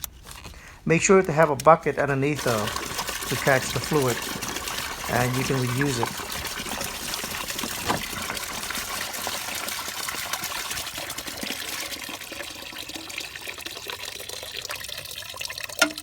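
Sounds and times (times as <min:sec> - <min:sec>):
fluid pouring into a bucket: 0:01.3 - 0:16.0.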